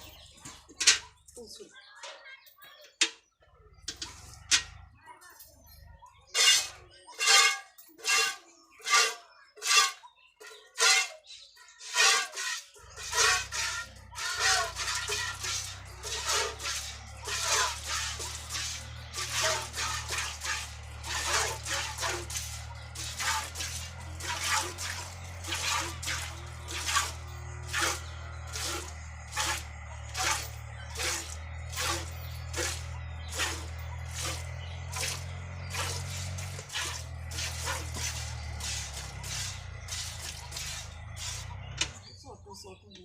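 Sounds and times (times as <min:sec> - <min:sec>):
milk squirting into a pail: 0:11.8 - 0:41.5.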